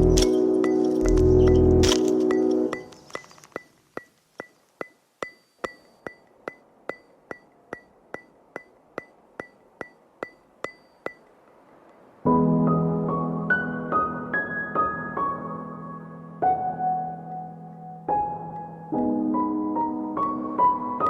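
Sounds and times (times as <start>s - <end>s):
keyboard music: 0.0s - 3.0s
ringing ticks like wood block: 0.1s - 12.1s.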